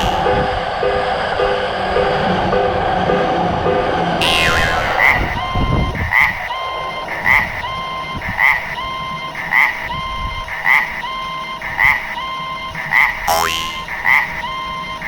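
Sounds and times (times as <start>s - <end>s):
steady two-note tone: 0.0s - 0.6s, 4.2s - 5.7s, 13.3s - 13.9s.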